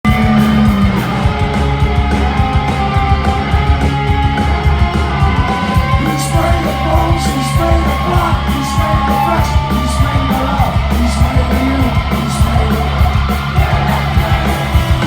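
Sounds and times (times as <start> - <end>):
punk rock band playing: 0.0 - 15.0.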